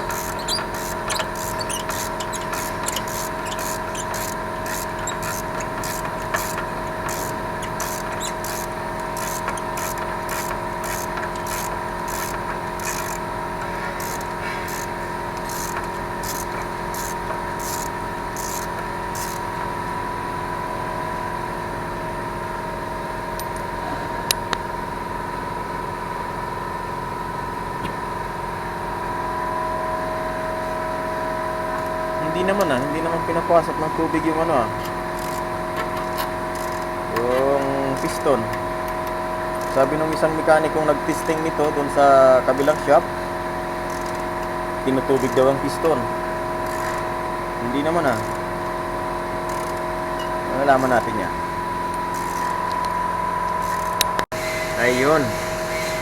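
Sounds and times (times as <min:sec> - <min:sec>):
ratchet wrench rasping: 0:00.0 - 0:19.7, 0:34.3 - 0:48.7, 0:49.3 - 0:51.2, 0:51.9 - 0:52.8, 0:53.4 - 0:54.1
steady mechanical hum: 0:00.0 - 0:56.0.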